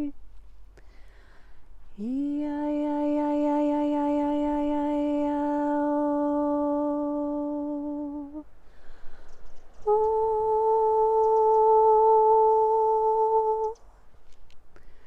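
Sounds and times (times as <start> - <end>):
breath: 0.8 - 1.7, 8.6 - 9.6, 14.7 - 15.0
woman humming long notes: 2.0 - 8.4, 9.8 - 13.8.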